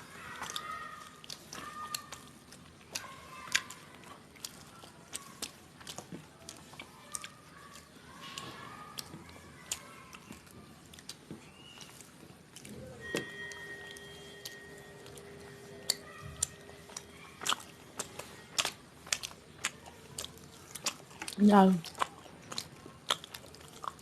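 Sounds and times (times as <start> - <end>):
close-up chewing: 0.0 - 24.0
wet mouth clicks: 16.9 - 24.0.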